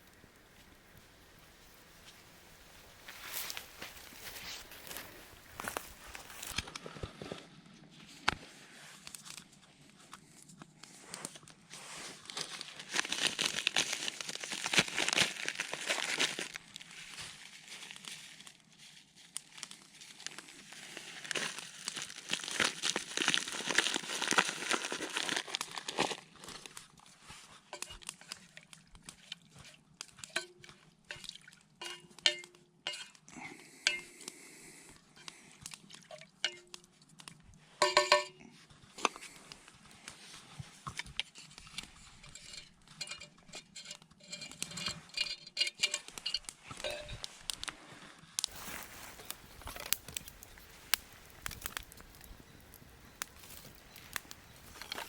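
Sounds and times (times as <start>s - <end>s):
metal cookware clinking: 31.8s - 33.1s, 37.8s - 38.4s, 42.3s - 47.2s.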